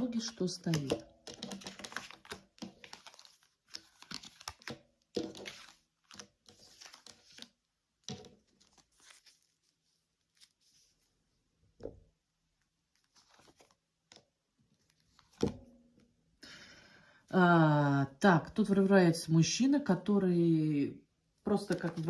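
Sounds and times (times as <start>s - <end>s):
cards being shuffled: 0.0s - 11.1s, 12.9s - 15.6s, 21.5s - 22.0s.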